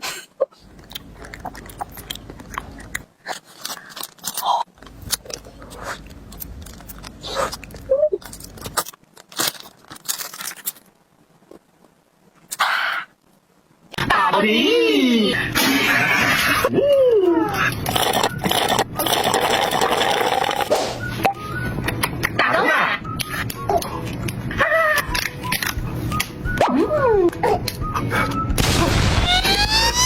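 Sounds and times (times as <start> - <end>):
chewing crunchy food: 0.6 - 10.8.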